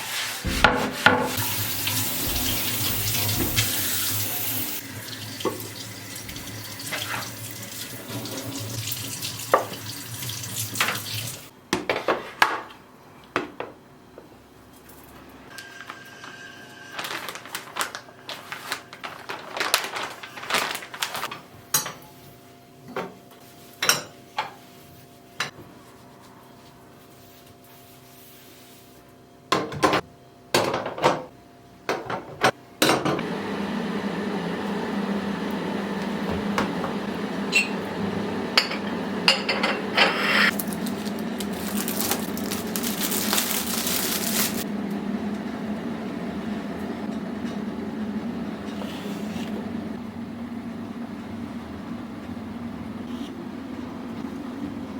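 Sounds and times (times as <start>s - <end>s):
loud hiss: 0.4s - 4.8s
machine hum: 0.4s - 7.5s
dishes and cutlery clinking: 38.6s - 40.6s.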